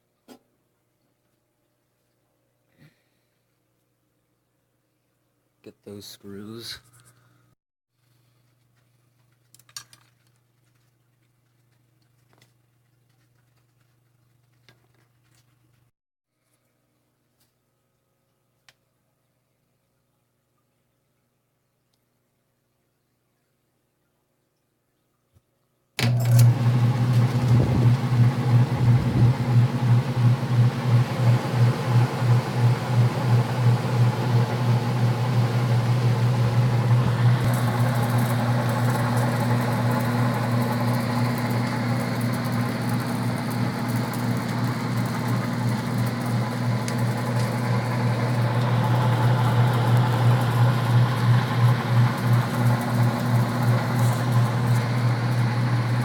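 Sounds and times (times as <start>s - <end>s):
furnace blower pulsing hum: 26.0s - 56.0s.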